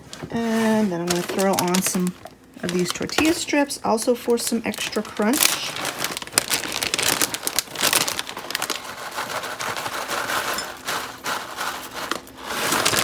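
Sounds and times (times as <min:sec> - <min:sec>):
snack bag rustling: 0:00.0 - 0:03.4, 0:04.2 - 0:13.0
crisp tortilla strips shaken out: 0:04.9 - 0:13.0.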